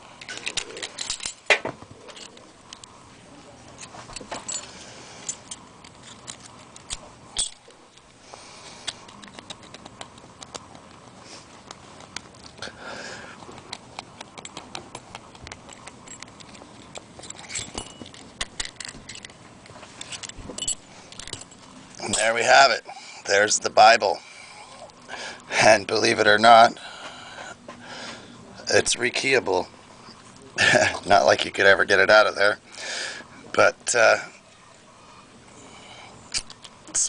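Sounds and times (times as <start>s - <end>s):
padlock metal clicks and clinks: 0.2s - 2.8s, 4.2s - 8.1s, 13.7s - 19.4s, 20.0s - 22.2s, 36.3s - 36.8s.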